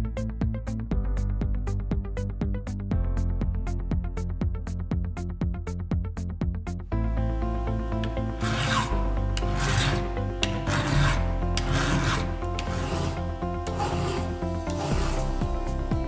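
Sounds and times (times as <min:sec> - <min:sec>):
background music: 0:00.0 - 0:16.0
file rasping on chainsaw chain: 0:08.4 - 0:15.4.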